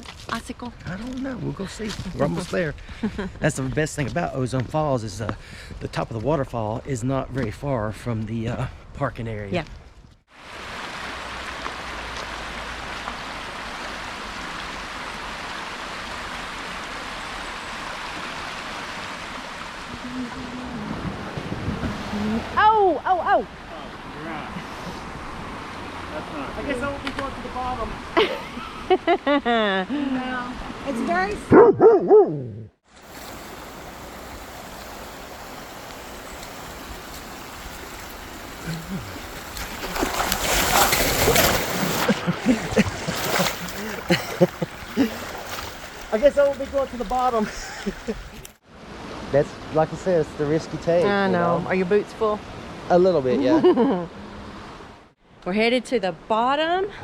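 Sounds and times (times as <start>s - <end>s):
waterfall rushing: 33.0s - 48.4s.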